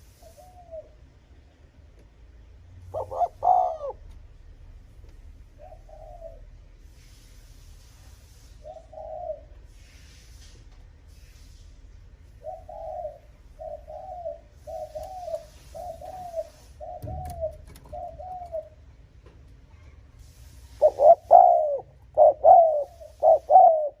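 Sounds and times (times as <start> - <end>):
dove cooing: 0.0 - 1.1, 2.8 - 4.3, 5.5 - 6.6, 8.6 - 9.8, 12.4 - 19.0, 20.6 - 24.0.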